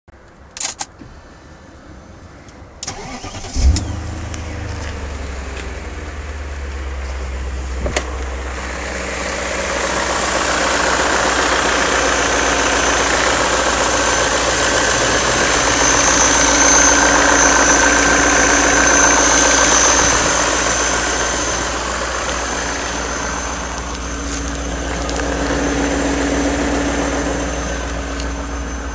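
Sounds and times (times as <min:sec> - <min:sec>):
car engine cranking and starting: 0:02.8 - 0:28.9
engine knocking: 0:09.8 - 0:22.1.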